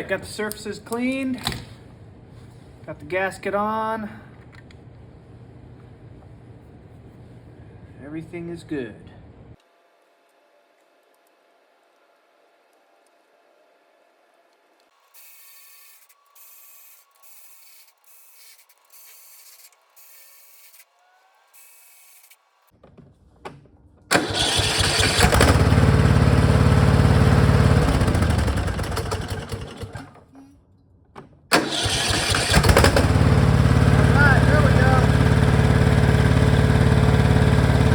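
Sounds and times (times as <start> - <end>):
short engine bursts: 24.1 - 30.2, 31.5 - 37.9
lawn tractor engine starting and running: 24.1 - 30.3, 31.5 - 37.9.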